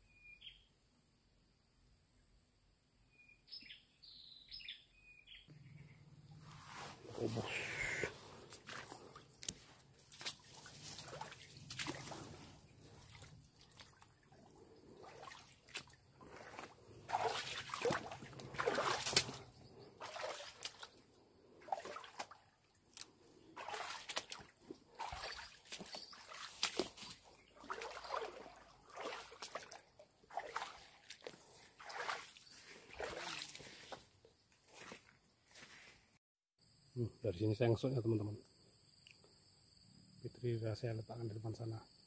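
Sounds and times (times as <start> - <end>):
footsteps splashing through water and mud: 7.6 - 35.9.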